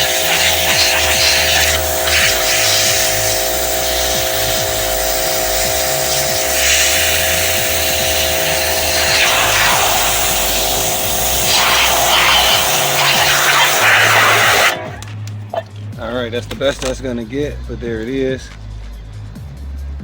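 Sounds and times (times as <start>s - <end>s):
water spray hissing on metal: 0.0s - 15.6s
pressure washer whining: 0.0s - 15.7s.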